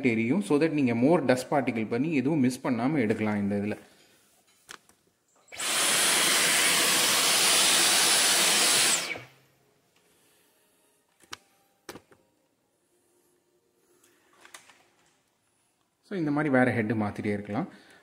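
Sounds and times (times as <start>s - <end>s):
vacuum cleaner high whine: 5.5s - 9.4s.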